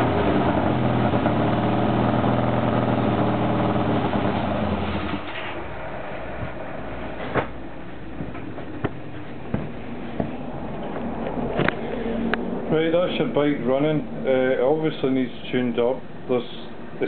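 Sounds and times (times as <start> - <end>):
motorcycle engine running: 0.0 - 5.2.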